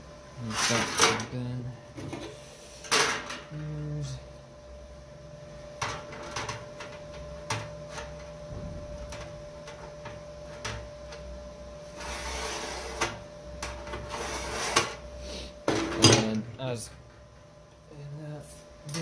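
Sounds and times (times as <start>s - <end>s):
faint steady hum: 0.0s - 19.0s
scraping on sheet metal: 0.4s - 1.2s, 11.9s - 13.1s, 14.0s - 15.0s.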